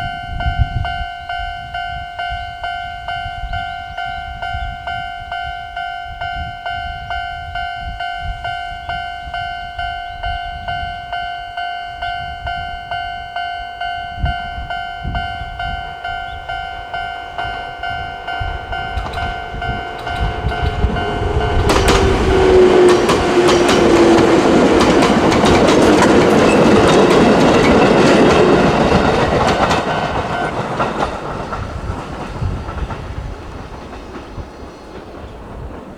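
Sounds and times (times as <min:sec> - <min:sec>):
level crossing alarm dinging: 0:00.0 - 0:33.0
train wheels clattering over rail joints: 0:15.9 - 0:35.9.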